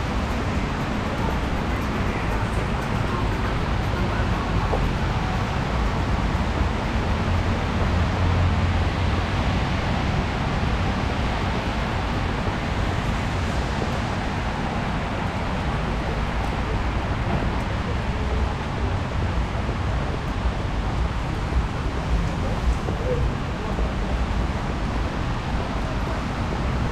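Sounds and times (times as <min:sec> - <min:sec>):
road traffic in rain: 0:00.0 - 0:26.9.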